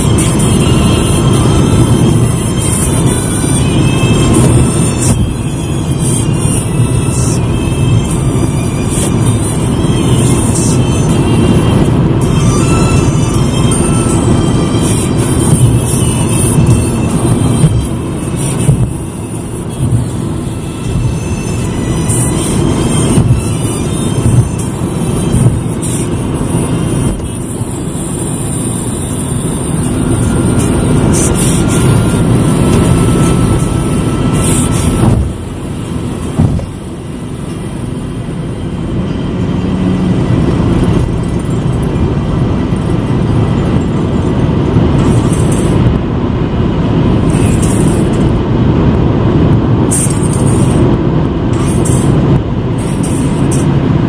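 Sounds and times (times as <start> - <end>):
car road and engine noise: 0.0 - 54.0.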